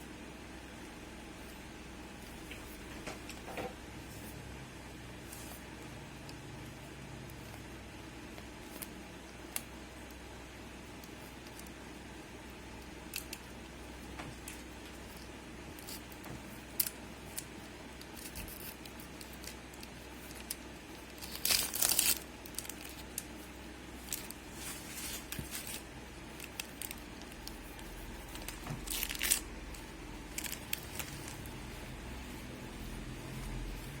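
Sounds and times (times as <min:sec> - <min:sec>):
crinkling by hand: 0:14.1 - 0:34.0.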